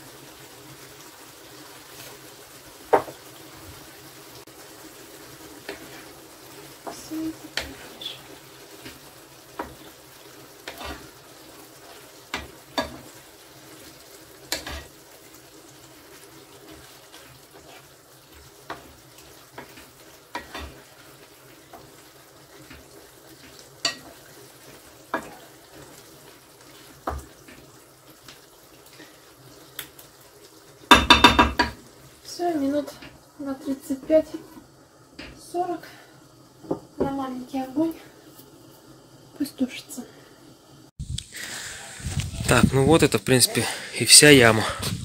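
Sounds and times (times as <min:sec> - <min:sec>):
sauce sizzling faintly in a pan: 0:00.0 - 0:45.0
cookware clatter: 0:30.9 - 0:31.8
utensil knocking against pan: 0:30.9 - 0:31.8.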